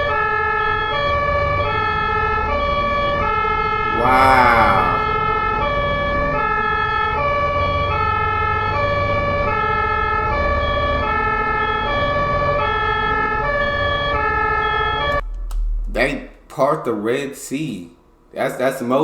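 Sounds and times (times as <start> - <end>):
two-tone ambulance siren: 0.0 - 5.0, 5.6 - 15.2.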